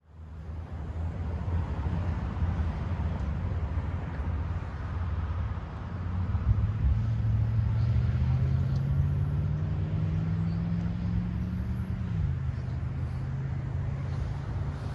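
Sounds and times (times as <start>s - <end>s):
low rumble of passing cars: 0.0s - 14.9s.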